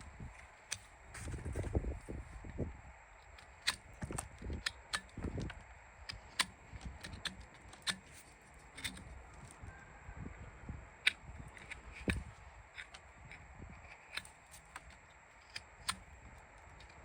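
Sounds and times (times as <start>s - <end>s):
tools clicking on horse hoof: 0.7s - 0.9s, 3.2s - 9.8s, 11.0s - 17.0s.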